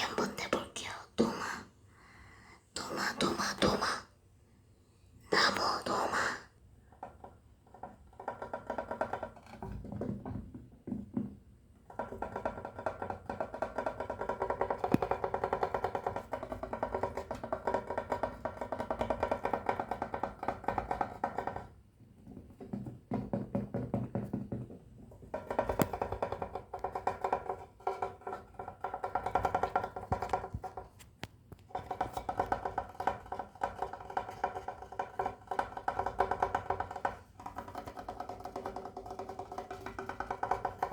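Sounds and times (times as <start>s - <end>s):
fast tapping on hollow object: 5.4s - 40.9s.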